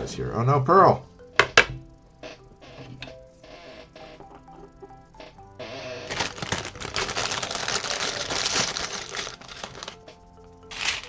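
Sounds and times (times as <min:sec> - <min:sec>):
plastic pieces rattling: 0:06.1 - 0:10.1, 0:10.7 - 0:11.0.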